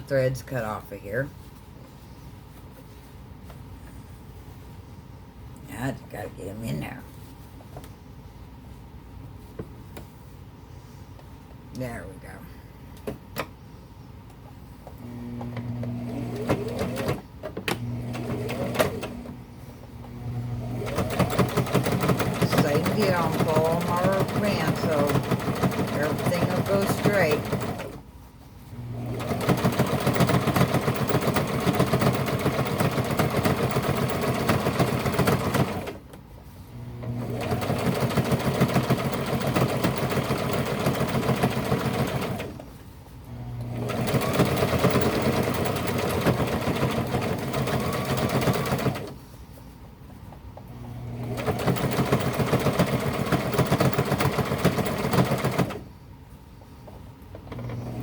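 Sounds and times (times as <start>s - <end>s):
sewing machine stitching: 15.0s - 19.4s, 20.0s - 28.0s, 28.8s - 36.0s, 36.9s - 42.7s, 43.4s - 49.2s, 50.7s - 55.9s, 57.4s - 58.0s.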